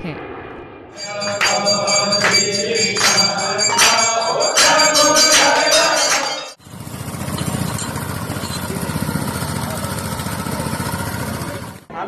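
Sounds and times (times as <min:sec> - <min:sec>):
metal bells ringing: 0:01.0 - 0:11.7
low engine rumble: 0:06.6 - 0:11.9.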